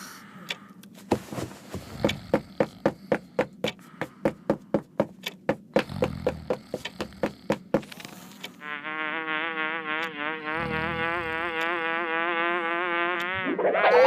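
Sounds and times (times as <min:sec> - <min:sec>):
fast sharp taps: 0:02.0 - 0:07.9
cartoon fly buzzing: 0:08.6 - 0:14.0.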